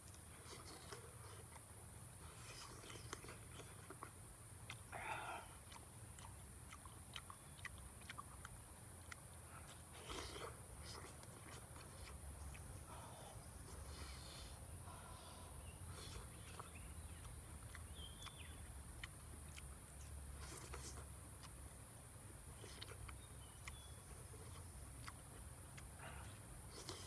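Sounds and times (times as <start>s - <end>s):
bird chirps: 15.0s - 18.7s.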